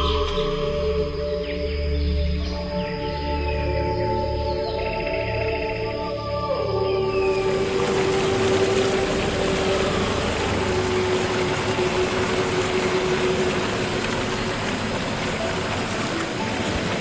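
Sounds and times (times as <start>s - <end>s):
low music pad note: 0.0s - 2.6s.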